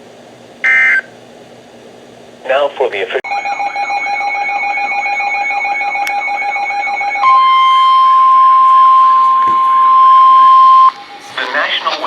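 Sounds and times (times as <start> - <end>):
electronic alarm warbling: 0.6 - 1.1, 3.3 - 10.9
steady warning alarm tone: 0.6 - 1.1, 3.3 - 11.3.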